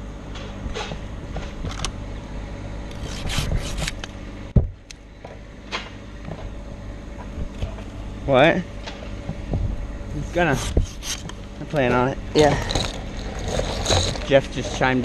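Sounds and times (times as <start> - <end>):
rubbing and scraping on tree trunk: 2.9 - 4.0, 10.2 - 11.8, 12.6 - 15.0.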